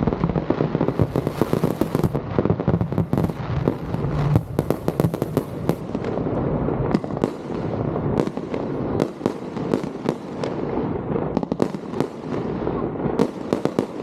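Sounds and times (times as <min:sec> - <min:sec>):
fireworks bangs: 0:00.0 - 0:14.0
fireworks rumbling and crackling: 0:00.0 - 0:14.0.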